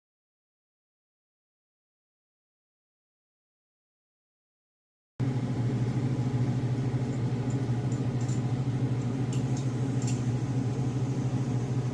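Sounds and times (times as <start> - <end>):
steady low hum: 5.2 - 11.9.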